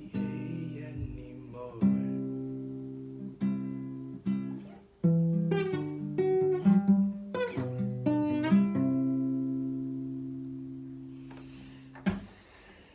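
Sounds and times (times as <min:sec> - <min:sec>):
acoustic guitar strumming chords: 0:00.0 - 0:12.6.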